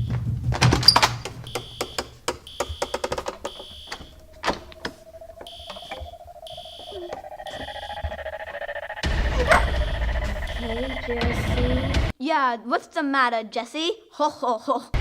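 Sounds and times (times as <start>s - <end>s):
fire alarm beeping: 0.0s - 12.1s
steady low tone: 1.4s - 12.1s.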